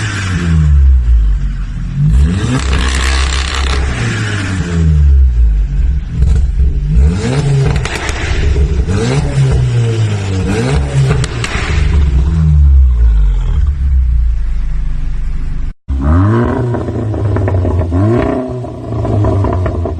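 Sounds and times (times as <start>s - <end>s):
car engine revving: 0.0s - 19.9s.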